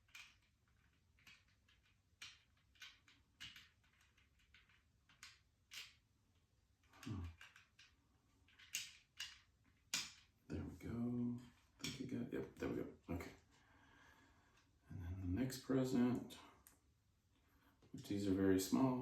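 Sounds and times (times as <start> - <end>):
plastic pieces clicking: 0.0 - 6.0, 6.9 - 10.4.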